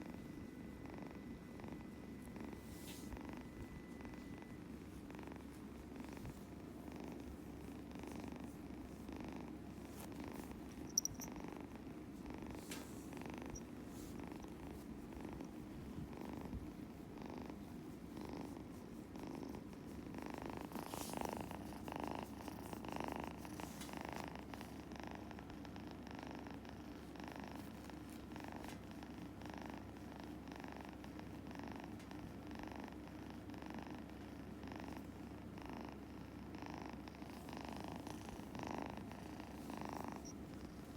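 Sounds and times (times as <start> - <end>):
kitten purring: 0.0 - 40.9.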